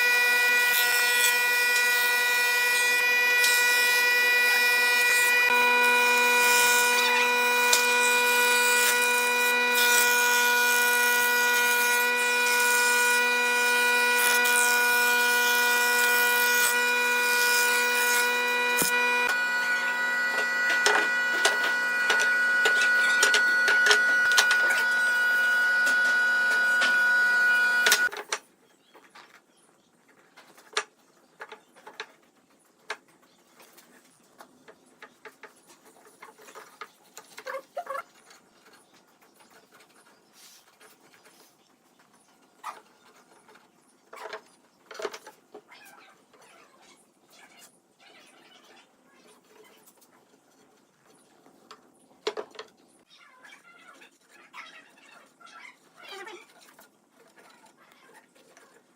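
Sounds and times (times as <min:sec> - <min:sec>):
power tool cutting wood: 0:00.0 - 0:28.1.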